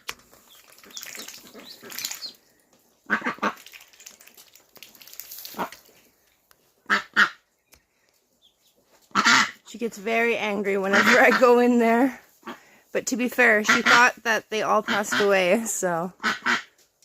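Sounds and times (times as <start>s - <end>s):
duckling peeping: 0.1s - 2.5s, 6.9s - 9.6s
duck calling loudly: 3.1s - 3.6s, 6.9s - 7.4s, 9.1s - 9.7s, 10.8s - 12.6s, 13.6s - 15.6s, 16.2s - 16.7s.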